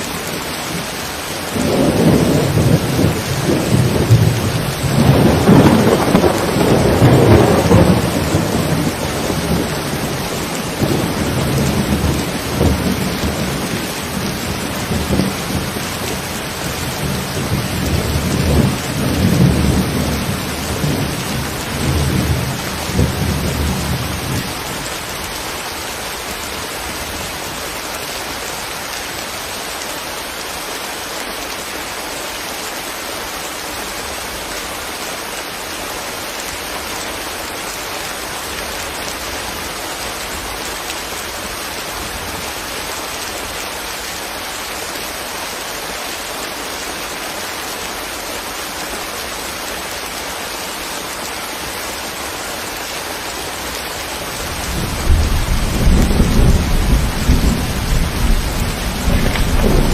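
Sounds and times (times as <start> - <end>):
steady rain hiss: 0.0 - 59.9
low rumble of thunder: 1.5 - 24.7, 54.5 - 59.9.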